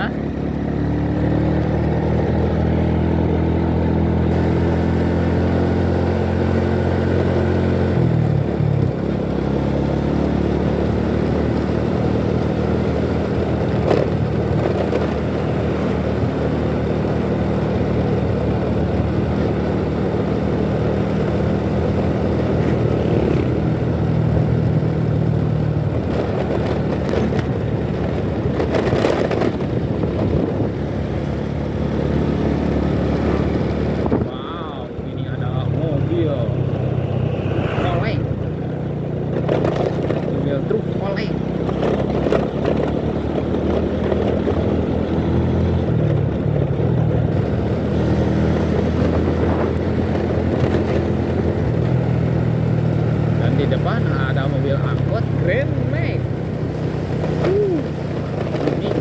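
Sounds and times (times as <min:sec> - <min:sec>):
motorcycle engine running: 0:00.0 - 0:59.0
road and wind noise: 0:00.0 - 0:59.0.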